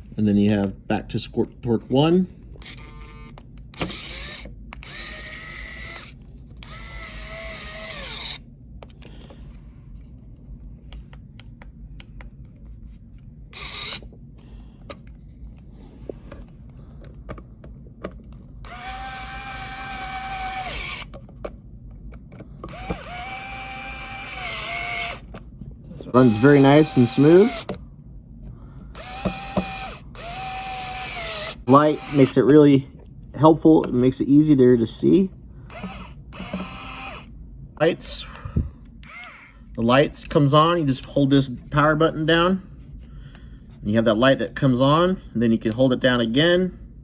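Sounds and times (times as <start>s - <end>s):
electric screwdriver motor whining: 2.6s - 8.4s, 13.5s - 14.1s, 18.7s - 21.2s, 22.7s - 25.3s, 26.1s - 27.7s, 29.0s - 32.5s, 35.7s - 37.3s, 39.0s - 39.5s.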